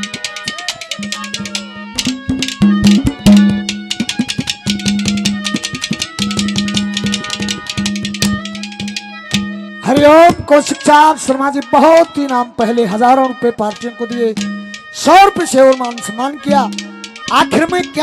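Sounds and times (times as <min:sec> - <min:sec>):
fast hand drum rhythm: 0:00.0 - 0:10.5, 0:14.4 - 0:18.0.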